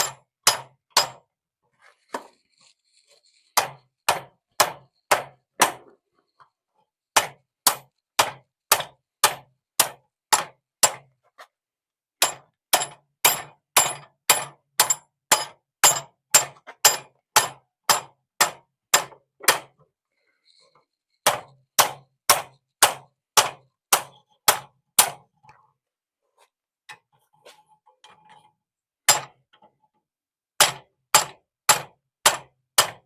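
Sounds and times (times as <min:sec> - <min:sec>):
hammer striking steel on anvil: 0:00.0 - 0:01.2, 0:03.6 - 0:05.8, 0:07.2 - 0:11.0, 0:12.2 - 0:19.8, 0:21.2 - 0:25.2, 0:29.1 - 0:29.4, 0:30.6 - 0:33.0.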